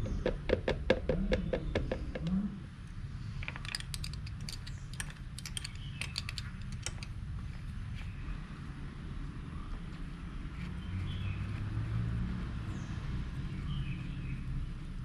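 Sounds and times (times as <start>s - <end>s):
quick metallic clicks: 3.4s - 7.2s
tools clicking and tapping: 3.4s - 7.2s.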